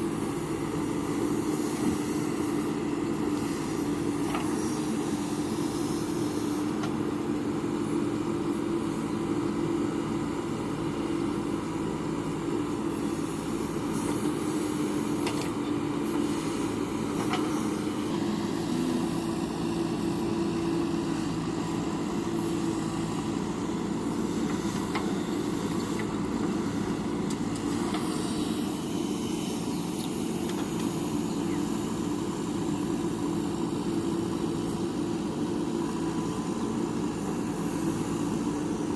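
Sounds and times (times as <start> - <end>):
diesel engine running under load: 0.0 - 38.9.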